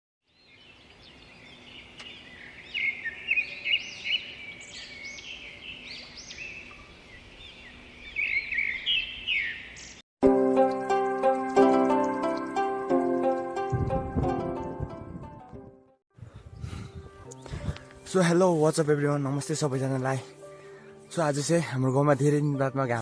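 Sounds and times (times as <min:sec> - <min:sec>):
small birds chirping: 0:00.2 - 0:10.0
plucked-string music: 0:10.2 - 0:15.9.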